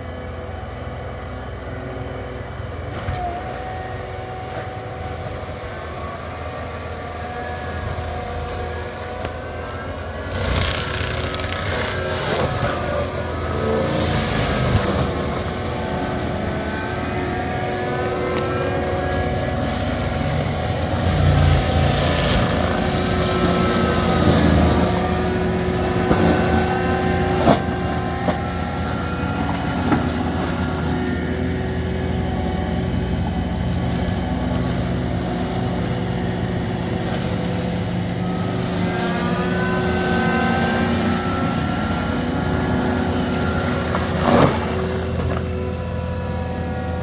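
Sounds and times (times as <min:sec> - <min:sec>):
skid steer with mulcher running: 0:00.0 - 0:47.0.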